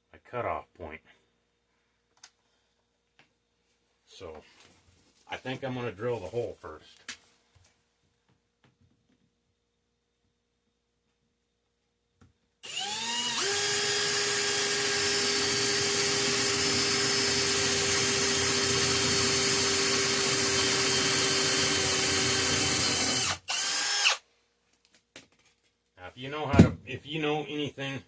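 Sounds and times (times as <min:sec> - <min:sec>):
electric drill boring metal: 0:12.6 - 0:24.2.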